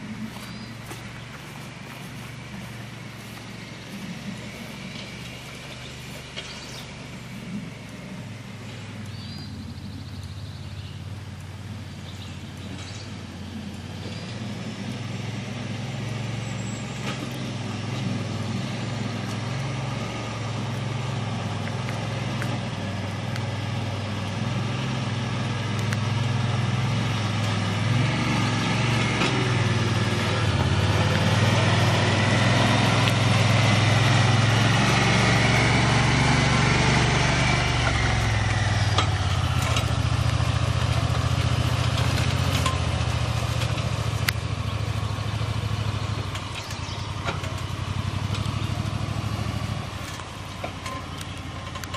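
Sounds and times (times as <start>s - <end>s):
utility vehicle engine running: 0.0s - 51.9s.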